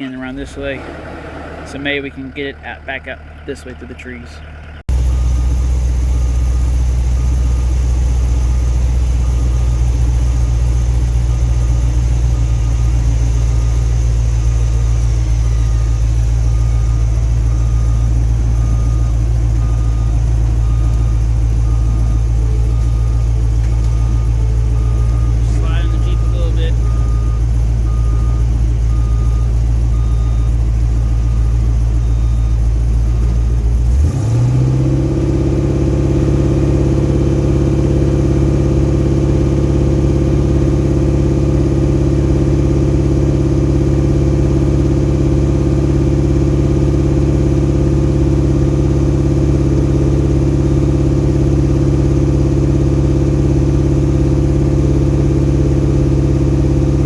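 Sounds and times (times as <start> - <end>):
engine idling and revving: 0.0 - 57.0
short beeps: 11.4 - 32.6.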